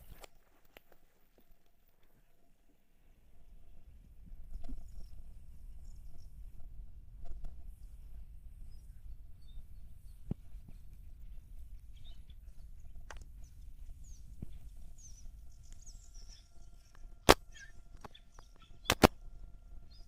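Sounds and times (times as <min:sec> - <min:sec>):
low outdoor rumble: 0:02.5 - 0:20.0
faint bird chirps: 0:03.1 - 0:20.0
sharp clicks: 0:16.8 - 0:20.0.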